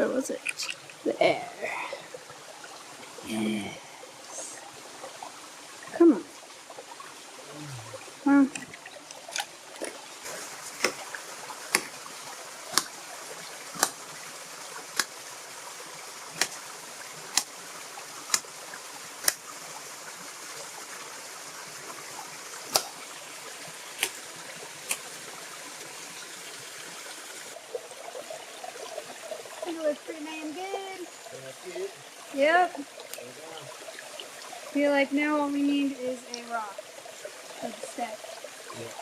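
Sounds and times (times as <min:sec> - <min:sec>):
waterfall flowing into a pool: 0:00.0 - 0:39.0
sharp clicks or knocks: 0:13.8 - 0:14.0.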